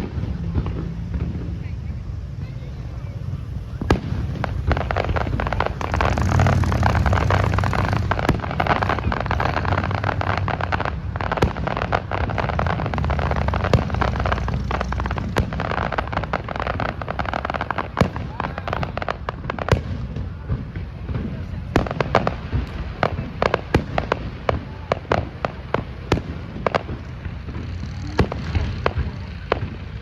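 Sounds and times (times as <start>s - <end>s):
low rumble: 0.0s - 17.6s
fireworks bangs: 0.0s - 30.0s
fireworks crackling: 0.0s - 30.0s.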